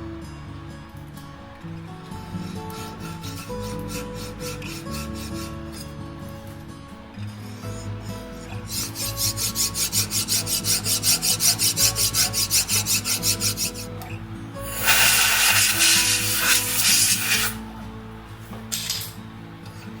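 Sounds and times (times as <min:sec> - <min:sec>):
lathe motor hum: 0:01.2 - 0:20.0
lathe cutting metal: 0:02.2 - 0:05.9, 0:07.5 - 0:17.8.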